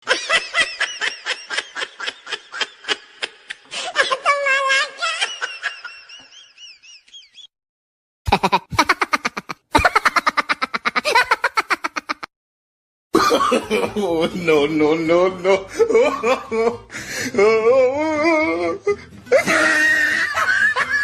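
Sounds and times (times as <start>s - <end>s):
rapid rhythmic laughing: 8.3s - 12.3s.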